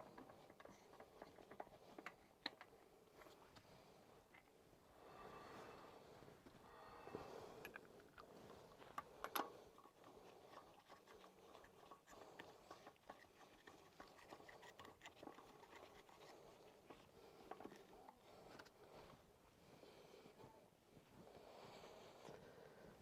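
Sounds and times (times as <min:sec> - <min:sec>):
faint clicks and taps: 0:00.0 - 0:03.7.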